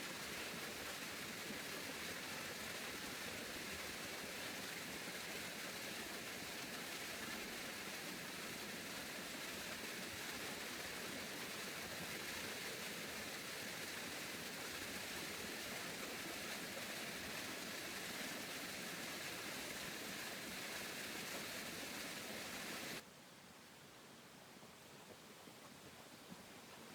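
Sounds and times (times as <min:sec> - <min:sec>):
steady rushing hiss: 0:09.1 - 0:23.0.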